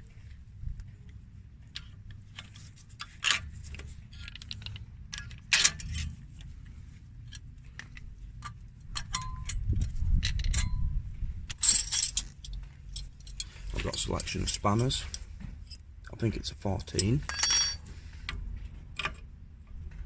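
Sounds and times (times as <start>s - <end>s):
metal tools clinking and knocking: 8.4s - 10.9s, 11.5s - 15.8s, 16.8s - 17.9s.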